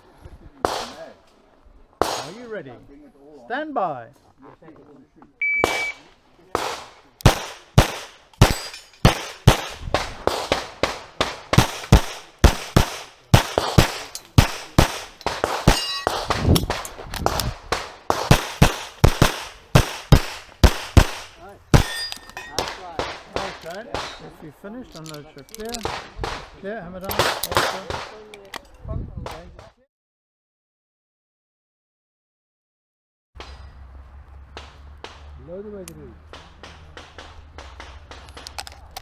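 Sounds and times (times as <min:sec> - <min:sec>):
rapid pistol shots: 0:00.6 - 0:01.3, 0:02.0 - 0:02.7, 0:05.6 - 0:28.7, 0:34.6 - 0:39.0
shot timer beep: 0:05.4 - 0:06.0
steel targets clanging: 0:05.4 - 0:28.8, 0:33.4 - 0:39.0.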